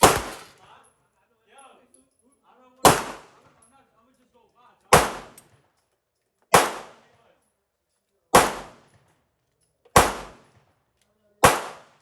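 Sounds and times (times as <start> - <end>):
pistol shots: 0.0 - 0.6, 2.8 - 3.4, 4.9 - 5.4, 6.5 - 7.0, 8.3 - 8.8, 10.0 - 10.5, 11.4 - 12.0.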